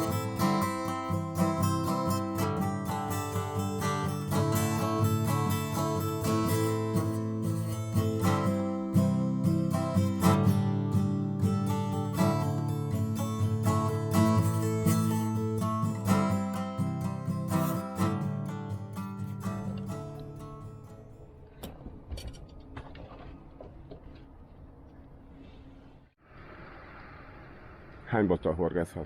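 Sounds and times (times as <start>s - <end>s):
acoustic guitar background music: 0.0s - 21.2s.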